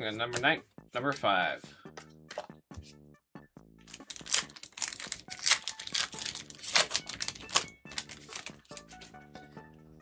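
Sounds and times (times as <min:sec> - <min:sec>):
trading cards snapping and swishing: 0:03.9 - 0:09.1.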